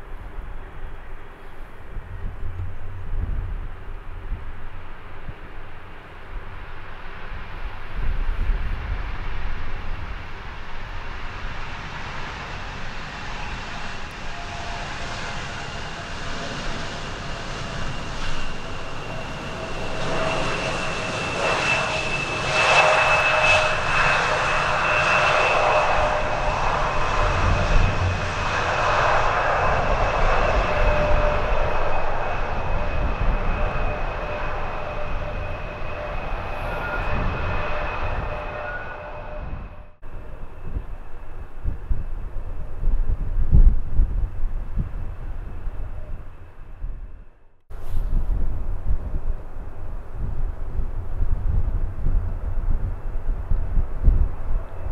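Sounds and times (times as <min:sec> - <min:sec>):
jet airliner engines passing: 0:00.0 - 0:54.9
wind rumble on microphone: 0:00.0 - 0:54.9.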